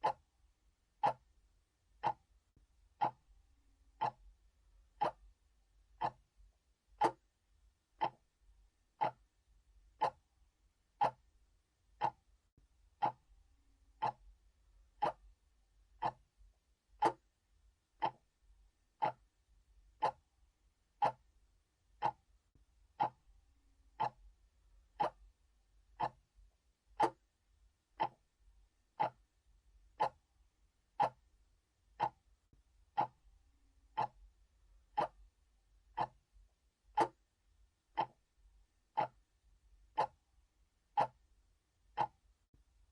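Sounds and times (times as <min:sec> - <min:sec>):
clock ticking: 0:00.0 - 0:00.3, 0:01.0 - 0:01.3, 0:02.0 - 0:02.3, 0:02.9 - 0:07.4, 0:08.0 - 0:08.3, 0:08.9 - 0:10.3, 0:10.9 - 0:11.3, 0:12.0 - 0:12.3, 0:12.9 - 0:13.3, 0:14.0 - 0:17.4, 0:18.0 - 0:18.3, 0:18.9 - 0:20.3, 0:20.9 - 0:21.3, 0:22.0 - 0:22.3, 0:22.9 - 0:23.3, 0:23.9 - 0:25.3, 0:25.9 - 0:28.3, 0:29.0 - 0:29.3, 0:29.9 - 0:30.3, 0:30.9 - 0:31.3, 0:31.9 - 0:32.3, 0:32.9 - 0:39.3, 0:39.9 - 0:42.4.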